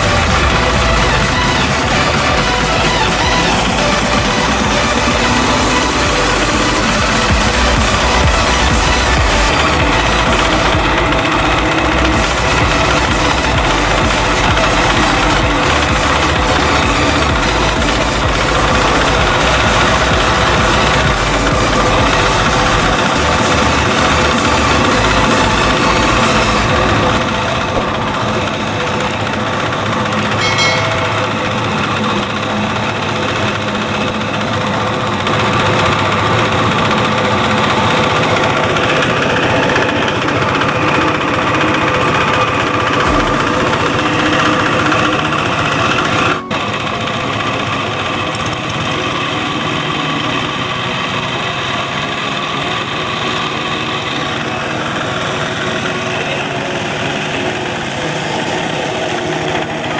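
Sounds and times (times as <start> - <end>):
diesel engine running water pump: 0.0 - 59.9.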